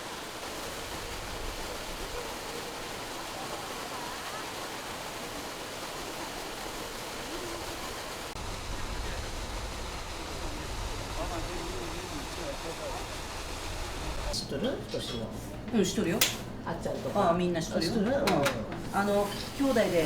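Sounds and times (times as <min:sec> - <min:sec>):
faint distant voices: 0:01.7 - 0:20.0
steady rushing noise: 0:04.7 - 0:14.4
low rumble: 0:08.4 - 0:14.3.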